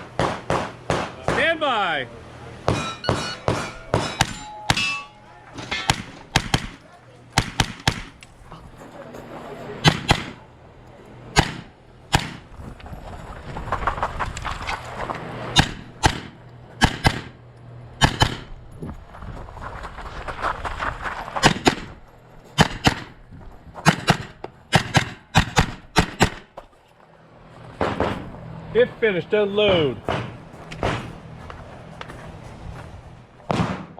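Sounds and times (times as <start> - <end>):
gunshots: 0.2 - 1.6, 5.7 - 6.8, 7.4 - 8.2, 9.8 - 10.4, 11.4 - 12.5, 15.6 - 17.4, 18.0 - 18.5, 22.6 - 23.2, 23.8 - 26.5, 27.8 - 28.3, 33.5 - 33.9.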